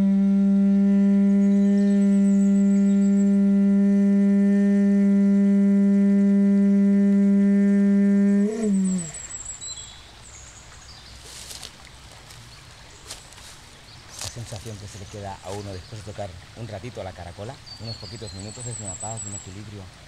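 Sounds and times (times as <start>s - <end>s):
conch shell trumpet blown: 0.0s - 9.0s.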